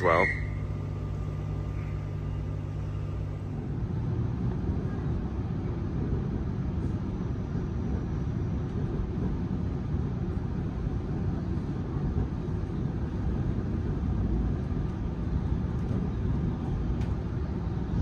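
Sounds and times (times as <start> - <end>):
electric train humming: 0.0 - 18.0.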